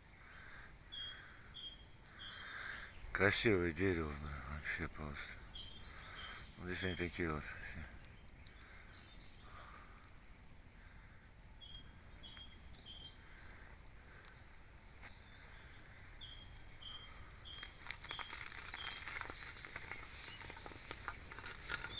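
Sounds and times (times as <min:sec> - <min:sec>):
crackling clicks: 0:05.9 - 0:10.9, 0:11.7 - 0:21.9.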